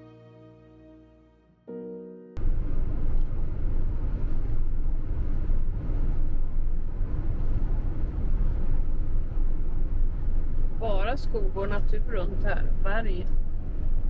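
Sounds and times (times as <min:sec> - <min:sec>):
vehicle engine and tyre rumble: 0:02.4 - 0:14.0.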